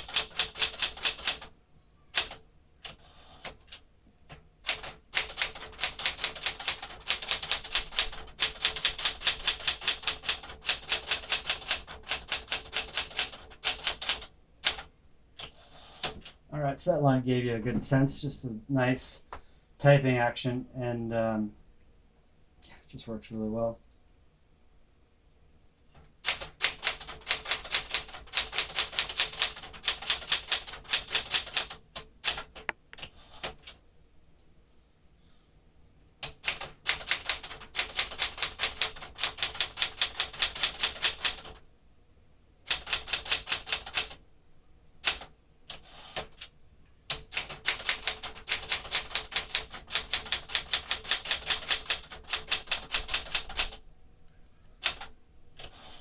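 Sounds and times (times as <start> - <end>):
manual typewriter keys clicking: 0.0 - 1.5, 2.1 - 16.4, 26.2 - 33.8, 36.2 - 41.6, 42.7 - 44.2, 45.0 - 46.5, 47.1 - 53.8, 54.8 - 56.0.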